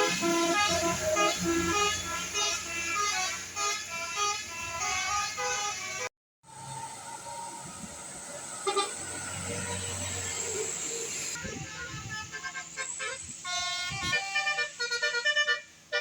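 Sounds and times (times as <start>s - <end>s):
brief horn blast: 0.0s - 6.1s, 8.6s - 9.9s, 11.4s - 15.7s
multi-tone air horn tune: 0.0s - 6.1s, 8.6s - 9.9s, 11.4s - 16.0s
traffic hiss: 0.0s - 16.0s.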